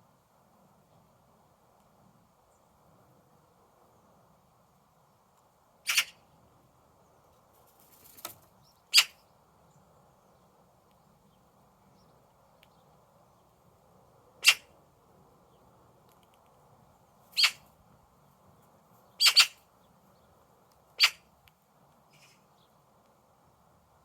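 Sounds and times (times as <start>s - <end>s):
faint steady background: 0.0s - 24.0s
birds calling: 5.8s - 6.3s, 7.2s - 10.4s, 14.3s - 14.8s, 16.9s - 18.4s, 19.0s - 21.4s.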